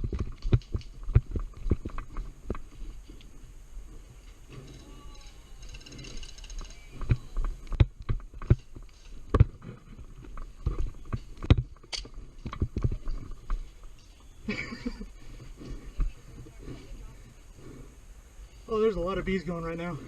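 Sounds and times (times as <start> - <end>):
rustling: 0.0 - 20.0
knocks and thumps: 7.0 - 13.7.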